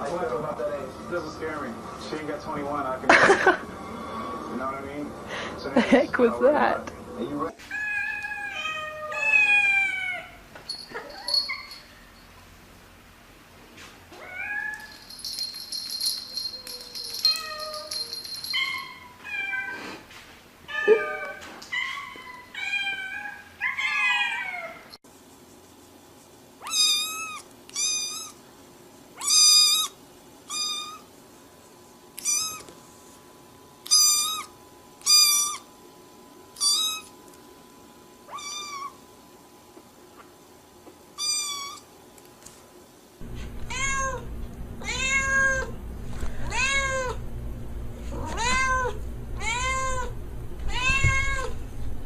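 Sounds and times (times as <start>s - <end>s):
cats meowing: 7.6s - 10.4s, 16.4s - 19.8s, 20.7s - 25.0s, 38.3s - 39.0s, 43.3s - 45.8s, 46.4s - 47.2s, 48.1s - 50.1s, 50.7s - 51.6s
steady hum: 43.2s - 52.0s.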